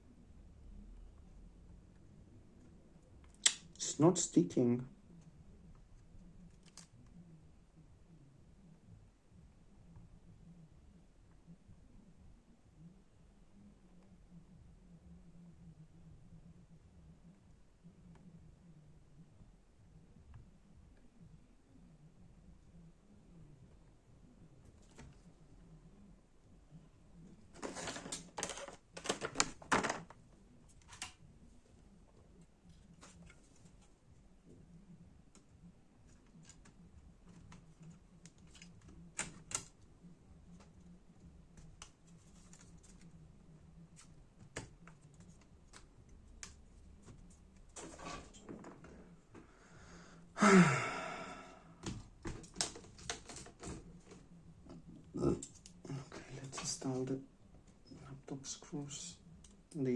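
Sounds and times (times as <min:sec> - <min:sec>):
small parts and tools clattering: 0:27.6 - 0:30.1
person sighing: 0:49.8 - 0:51.8.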